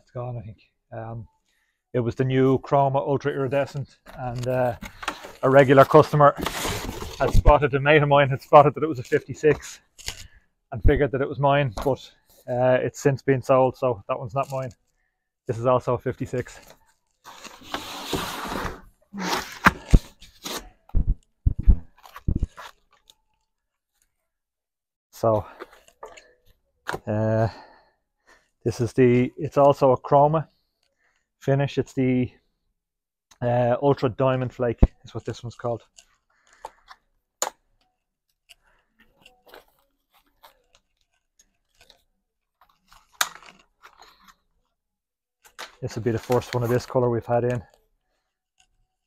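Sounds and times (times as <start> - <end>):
packaging crinkling and rustling: 38.6 - 44.7.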